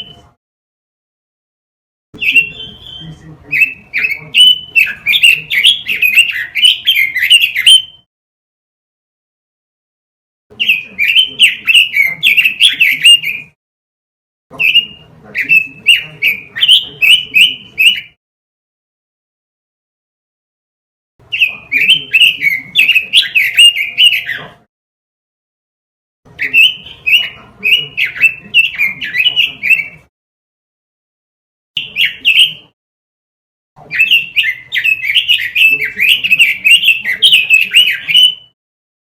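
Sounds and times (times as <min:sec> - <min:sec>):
bird warbling song: 0:02.2 - 0:08.1, 0:10.5 - 0:13.6, 0:14.5 - 0:18.2, 0:21.3 - 0:24.6, 0:26.3 - 0:30.1, 0:31.8 - 0:32.7, 0:33.8 - 0:38.6.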